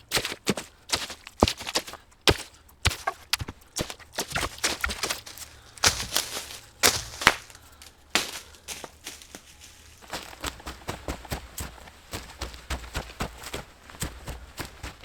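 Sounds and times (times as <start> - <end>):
twigs snapping: 0.2 - 10.6
footsteps crunching dry leaves: 0.2 - 15.0.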